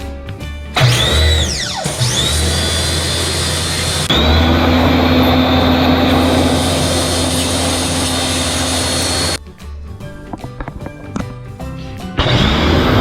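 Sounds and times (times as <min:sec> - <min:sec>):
background music: 0:00.0 - 0:03.4, 0:09.4 - 0:13.0
pressure washer spraying: 0:00.8 - 0:04.1, 0:05.1 - 0:09.4.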